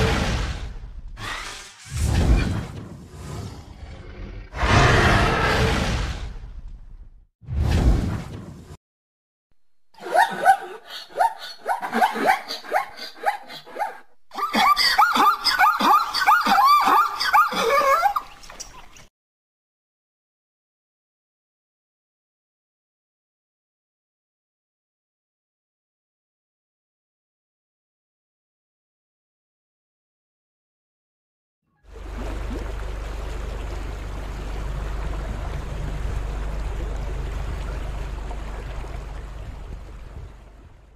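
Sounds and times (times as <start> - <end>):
rushing water-like noise with rumble: 31.9 - 40.9.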